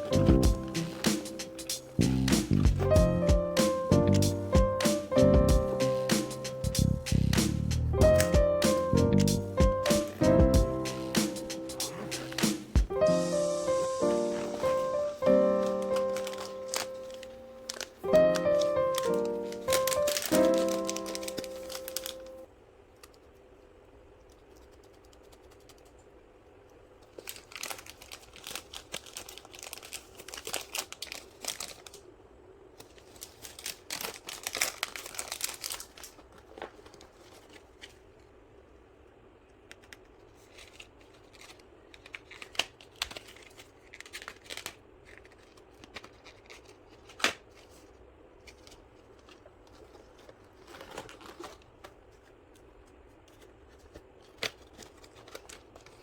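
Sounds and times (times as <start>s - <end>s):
packaging crinkling and tearing: 10.9s - 22.4s, 27.0s - 38.3s, 39.7s - 56.0s.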